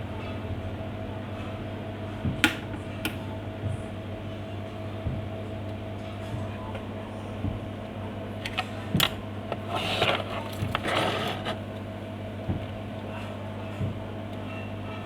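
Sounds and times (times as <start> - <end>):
hot-air blower blowing: 9.5 - 11.7.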